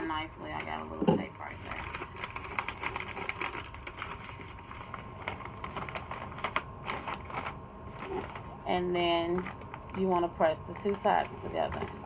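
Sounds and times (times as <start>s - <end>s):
chip bag crinkling: 1.4s - 8.6s.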